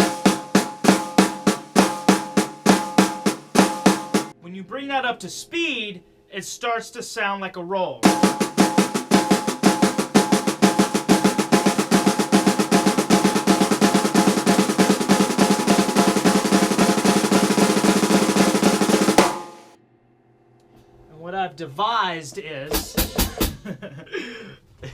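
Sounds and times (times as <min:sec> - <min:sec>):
fast snare drum strokes: 0:00.0 - 0:04.3, 0:08.0 - 0:19.8.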